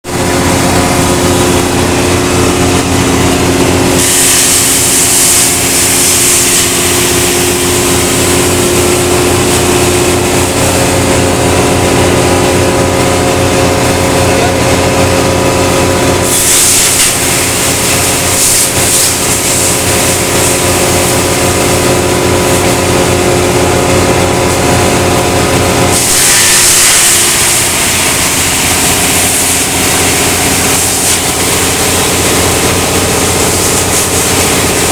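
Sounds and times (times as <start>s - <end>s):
wood chipper running: 0.0s - 34.9s.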